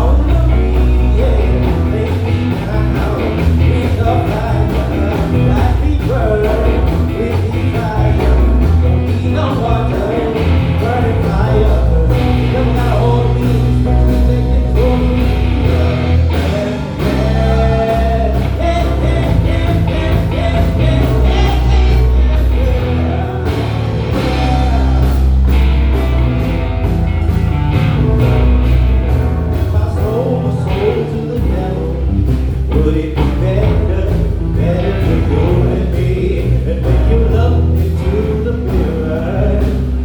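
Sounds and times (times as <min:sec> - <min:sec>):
drum kit: 0:00.0 - 0:40.0
electric bass: 0:00.0 - 0:40.0
keyboard: 0:00.0 - 0:40.0
gliding lead melody: 0:12.5 - 0:31.4.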